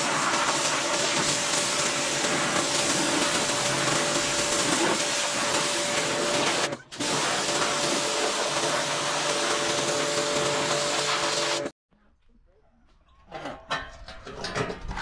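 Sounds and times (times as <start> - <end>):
pressure washer spraying water: 0.0 - 11.7.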